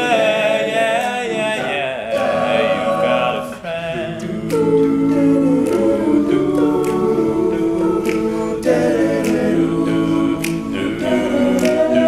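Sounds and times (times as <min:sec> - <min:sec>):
male a cappella group singing: 0:00.0 - 0:12.0
sharp percussive clicks: 0:04.2 - 0:12.0.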